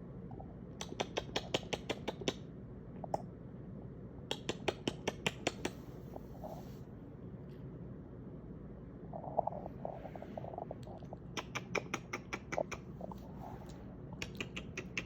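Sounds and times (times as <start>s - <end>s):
person making sharp clicks: 0.8s - 2.4s, 4.3s - 5.8s, 11.3s - 12.9s, 14.2s - 15.0s.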